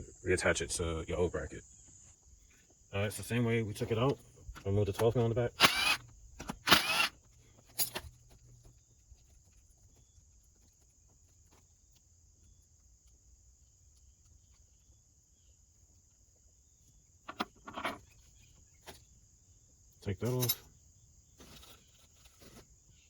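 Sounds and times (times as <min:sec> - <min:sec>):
insects chirring: 0:00.0 - 0:23.0.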